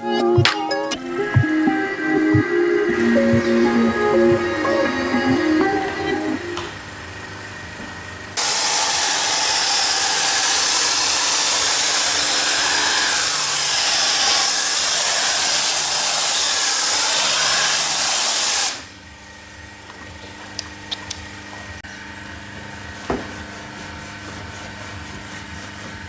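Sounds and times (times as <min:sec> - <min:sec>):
pressure washer spraying: 0:00.9 - 0:19.0.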